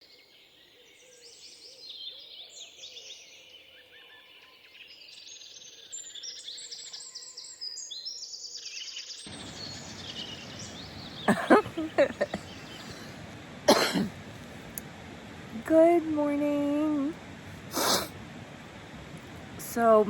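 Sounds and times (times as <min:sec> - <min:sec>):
songbirds singing: 0:00.0 - 0:20.0
steady rushing noise: 0:09.3 - 0:20.0.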